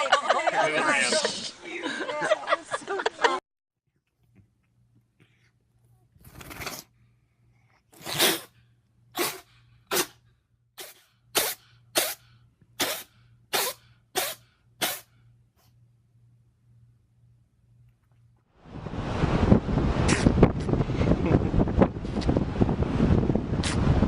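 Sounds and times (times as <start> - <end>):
animal sneezing: 8.0 - 10.2, 10.8 - 12.2, 12.8 - 15.1.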